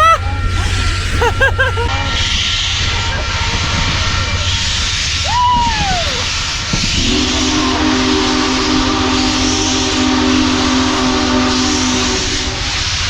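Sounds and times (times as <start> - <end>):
steam whistle chord: 6.6 - 13.0.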